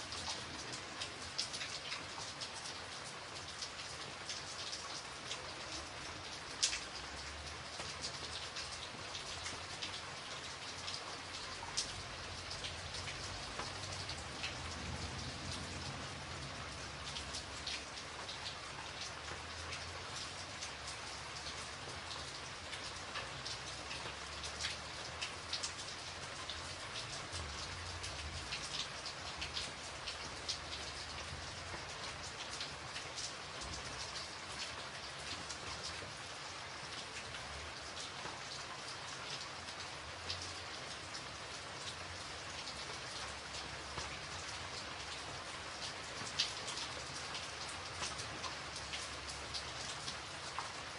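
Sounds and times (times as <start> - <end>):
raindrops striking close by: 0.0 - 50.9
rain hissing: 11.0 - 21.2.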